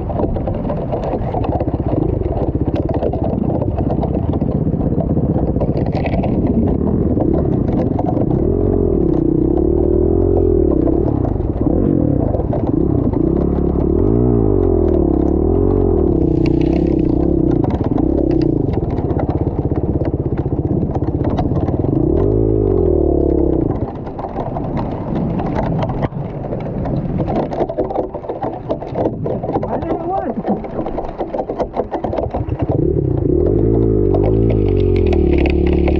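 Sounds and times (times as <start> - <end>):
clattering and rattling: 0.0 - 35.9
dirt bike engine revving: 8.3 - 23.8, 32.6 - 35.9.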